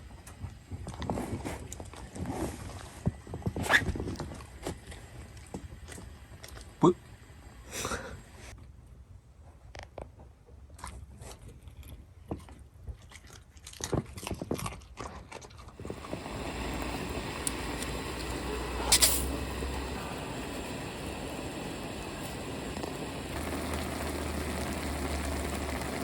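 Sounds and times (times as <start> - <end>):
steady hiss: 2.2 - 8.6, 15.8 - 26.0
crunching and chewing: 9.8 - 15.8
sharp crack: 16.9 - 20.1.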